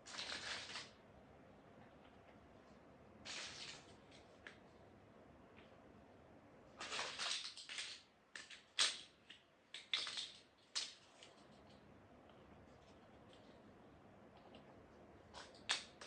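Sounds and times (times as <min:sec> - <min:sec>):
plastic bricks clicking together: 0:07.0 - 0:11.0.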